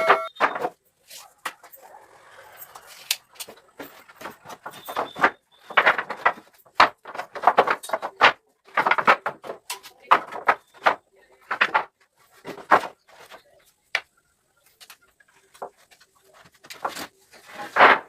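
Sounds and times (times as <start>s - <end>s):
sharp knocks and clatters: 0.0s - 0.8s, 3.3s - 14.1s.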